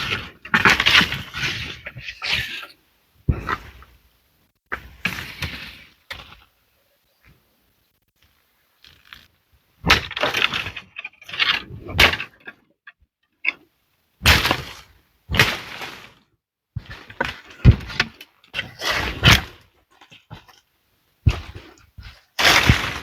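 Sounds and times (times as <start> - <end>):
sharp cracks and knocks: 8.2 - 12.6, 14.2 - 20.6, 21.2 - 23.0.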